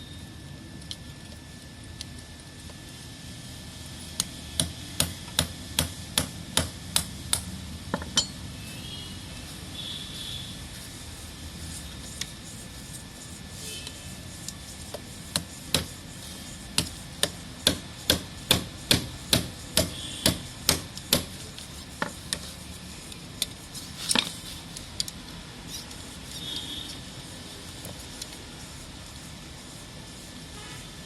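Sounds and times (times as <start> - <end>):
tool knocking on a pipe: 16.8 - 21.3.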